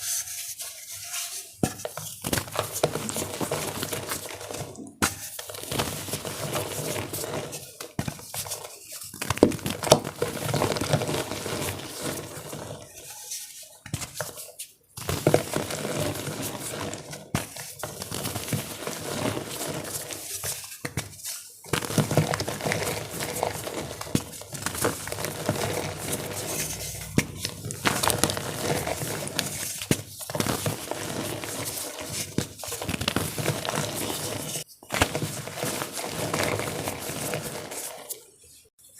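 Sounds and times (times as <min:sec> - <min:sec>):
chalk crumbling in water: 0:13.2 - 0:38.4.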